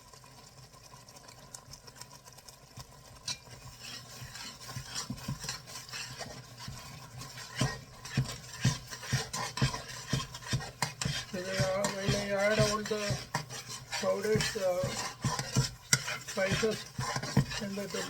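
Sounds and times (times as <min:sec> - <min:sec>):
spoon stirring in cooking pot: 0:00.0 - 0:18.0
spoon knocking against pot: 0:04.7 - 0:18.0.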